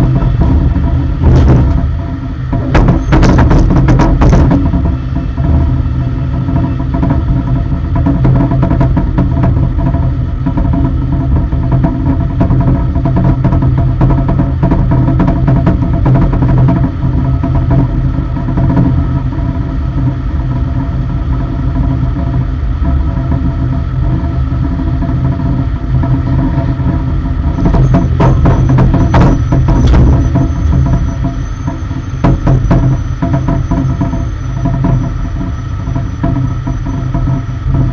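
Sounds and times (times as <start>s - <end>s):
machinery engine drone: 0.0s - 37.9s
thin high whine: 0.0s - 37.9s
metallic knocks and clatter: 27.5s - 35.5s.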